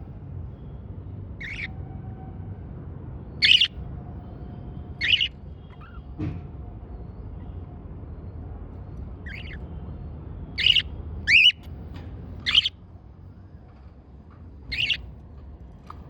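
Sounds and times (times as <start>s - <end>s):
cockatiel shrill calls: 1.4s - 1.7s, 3.4s - 3.7s, 5.0s - 6.1s, 9.2s - 9.6s, 10.6s - 11.6s, 12.4s - 12.7s, 14.7s - 15.0s.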